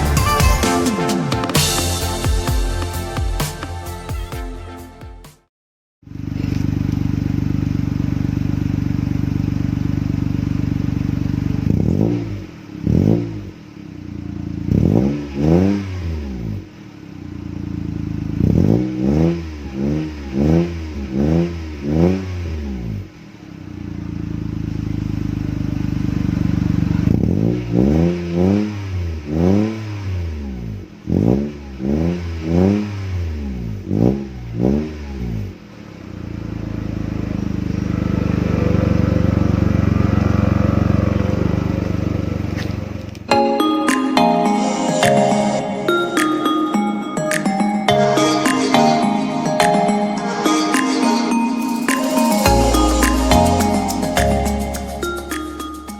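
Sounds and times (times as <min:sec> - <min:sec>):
car engine idling and revving: 0:06.0 - 0:43.3, 0:52.0 - 0:55.9.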